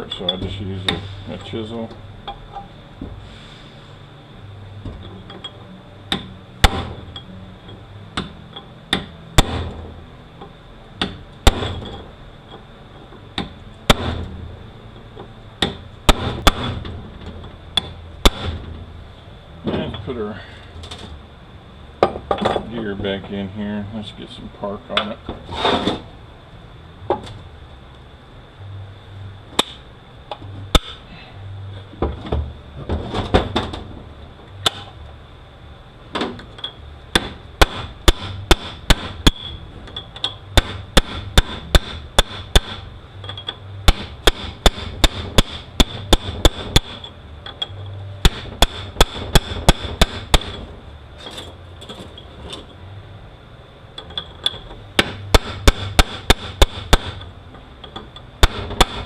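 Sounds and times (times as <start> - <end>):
hammer striking chisel on metal: 37.2 - 50.6, 54.4 - 57.2.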